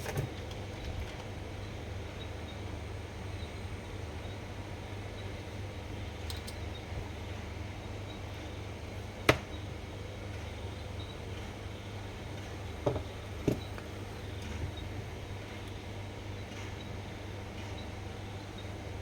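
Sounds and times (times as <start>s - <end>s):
steady low hum: 0.0s - 19.0s
soft knocks: 12.8s - 13.7s.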